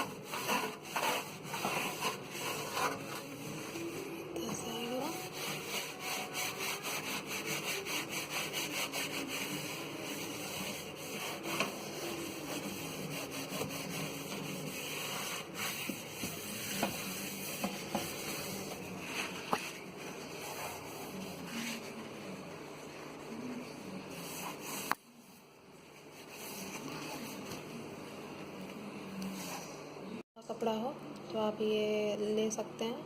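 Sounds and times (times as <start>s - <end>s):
scrubbing microwave surfaces: 0.0s - 22.0s.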